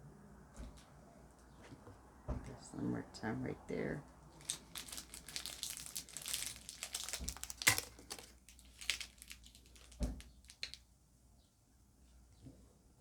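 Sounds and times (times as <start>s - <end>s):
plastic packaging crinkling: 4.3s - 10.8s.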